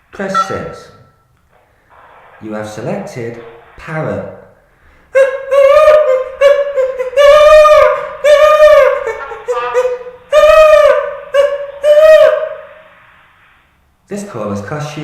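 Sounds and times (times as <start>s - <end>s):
man imitating parrot squawks: 5.1s - 12.7s.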